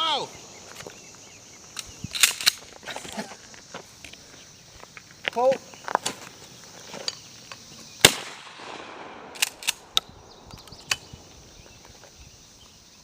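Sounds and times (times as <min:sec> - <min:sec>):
sharp clicks: 0:01.7 - 0:02.6, 0:09.2 - 0:11.2
shotgun shot with echo: 0:08.0 - 0:10.0.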